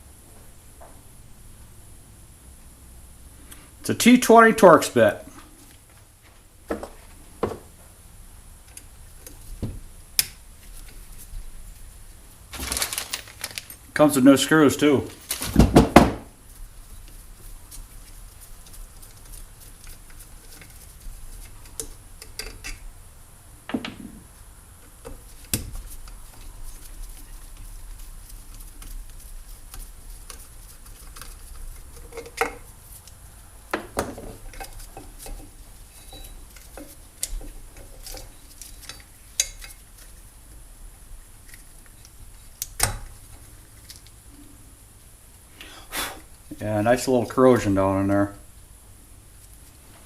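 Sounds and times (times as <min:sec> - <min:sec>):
metal parts clinking and knocking: 0:12.6 - 0:13.8.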